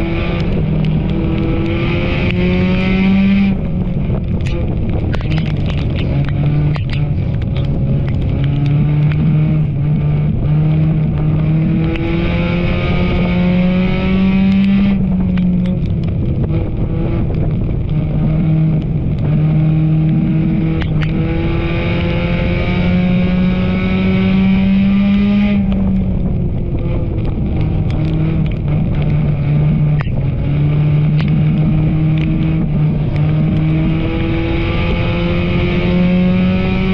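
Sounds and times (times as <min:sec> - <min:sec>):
race car engine accelerating: 0:00.0 - 0:15.8, 0:16.4 - 0:36.9
sharp clacks: 0:04.2 - 0:09.3, 0:20.0 - 0:21.2.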